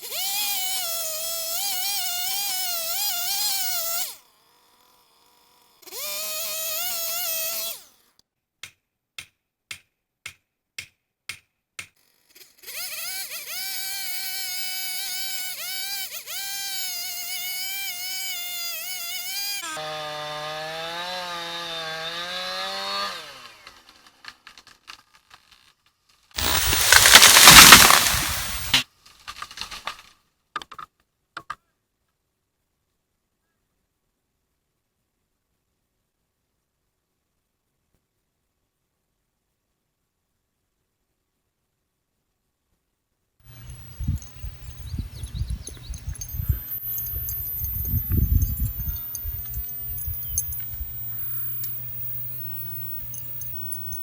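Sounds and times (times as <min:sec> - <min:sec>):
chainsaw cutting wood: 0:00.0 - 0:08.2, 0:11.8 - 0:25.8, 0:26.4 - 0:30.1, 0:43.4 - 0:54.0
sharp clicks: 0:26.4 - 0:28.8.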